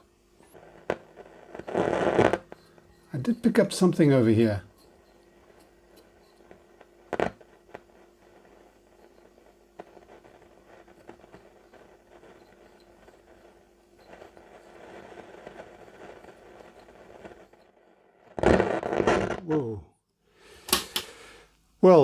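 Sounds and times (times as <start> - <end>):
radio crackle and hiss: 0.0 - 22.0
radio hum: 0.6 - 5.7, 18.4 - 19.8
loud crack: 18.4 - 19.4.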